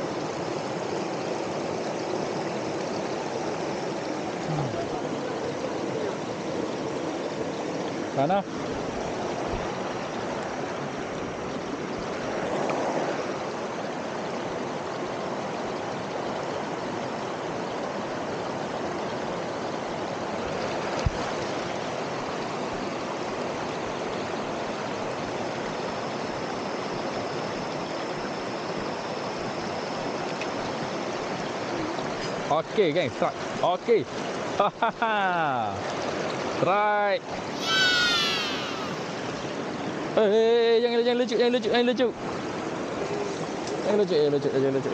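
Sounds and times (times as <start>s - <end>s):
waterfall and stream rushing: 0.0s - 35.0s, 35.6s - 44.9s.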